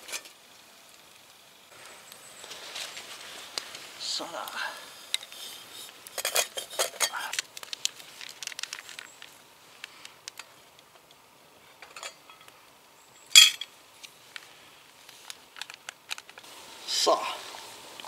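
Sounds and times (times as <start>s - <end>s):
short loud hissing rustle: 1.7s - 6.2s.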